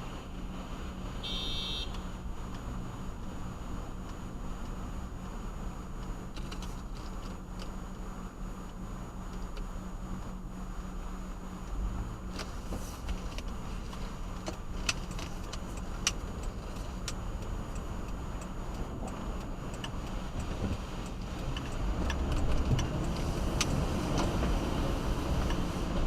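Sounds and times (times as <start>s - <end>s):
car engine and road noise: 0.0s - 26.0s
sharp ticks and clicks: 14.4s - 24.4s.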